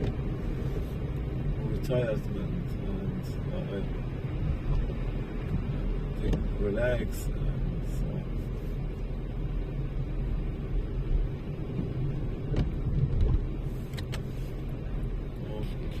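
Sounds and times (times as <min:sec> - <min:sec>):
car rumbling on the move: 0:00.0 - 0:16.0.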